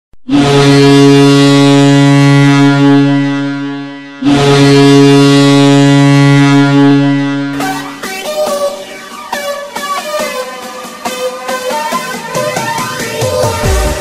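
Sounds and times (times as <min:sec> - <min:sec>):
goal horn blasts: 0:00.2 - 0:08.8.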